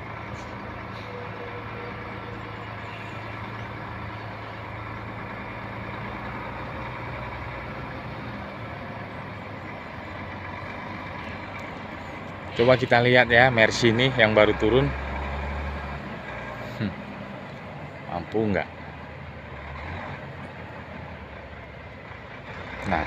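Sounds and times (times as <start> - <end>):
diesel truck engine running: 0.0 - 23.0.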